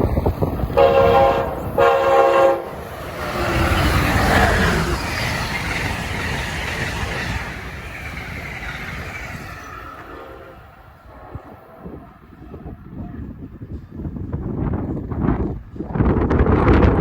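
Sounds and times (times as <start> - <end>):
falling pitch train whine: 0.0 - 13.0
train wheels rumbling on rails: 0.0 - 17.0.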